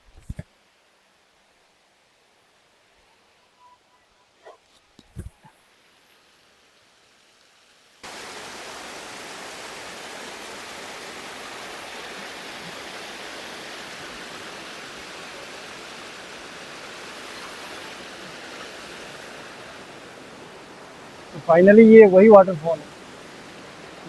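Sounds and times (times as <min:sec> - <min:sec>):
waterfall rushing: 0:08.0 - 0:24.0.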